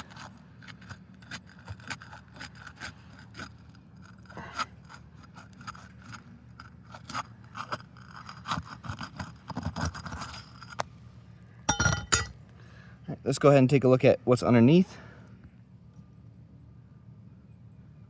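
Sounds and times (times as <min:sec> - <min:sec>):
roofing tool scraping shingle: 0:00.0 - 0:10.8.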